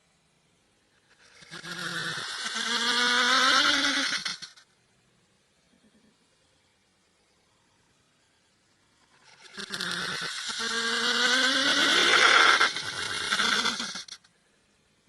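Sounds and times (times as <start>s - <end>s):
person snoring: 1.2s - 4.5s, 9.3s - 14.2s.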